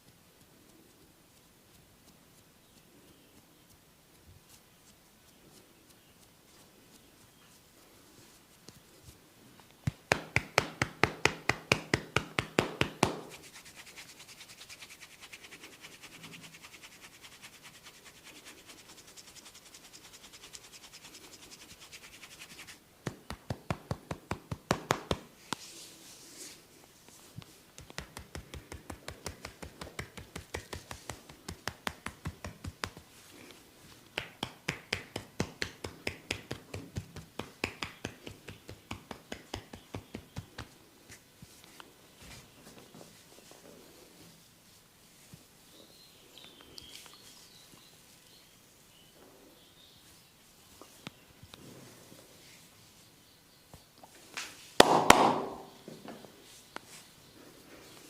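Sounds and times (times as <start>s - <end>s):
scratching and rubbing on hair: 0.0s - 45.9s, 46.9s - 48.3s, 50.0s - 53.1s
rhythmic hand strikes on body: 9.8s - 15.0s, 21.9s - 25.3s, 27.7s - 33.2s, 34.1s - 41.2s, 54.8s - 55.7s.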